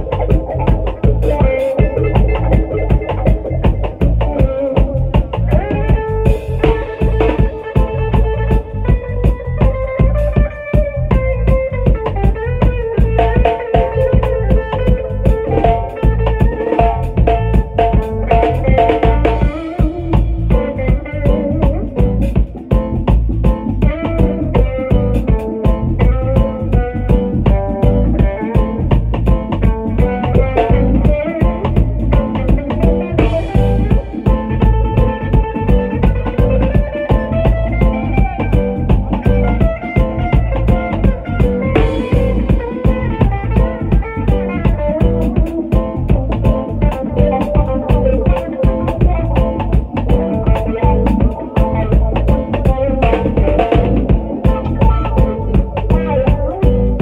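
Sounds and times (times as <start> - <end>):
drum kit beat: 0.0 - 57.0
guitar: 0.0 - 57.0.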